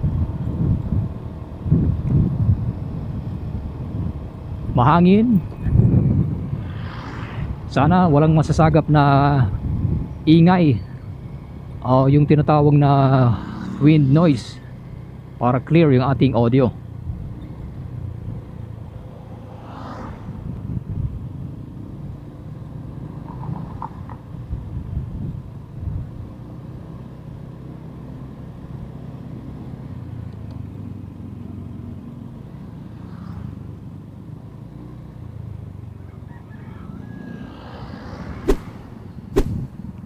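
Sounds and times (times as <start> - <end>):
wind noise: 0.0 - 10.3, 20.1 - 21.5, 24.4 - 26.2, 37.9 - 40.0
motorcycle engine rumble: 0.0 - 26.9.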